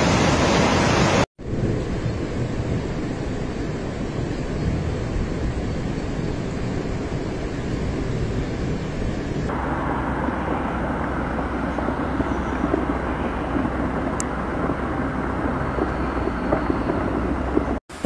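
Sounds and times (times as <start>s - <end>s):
floodwater rushing: 0.0s - 1.3s, 8.6s - 18.0s.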